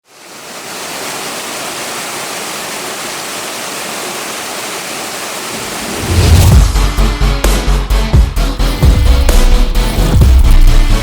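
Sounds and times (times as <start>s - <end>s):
waterfall roaring: 0.1s - 6.6s
loud music with deep bass: 6.5s - 11.0s.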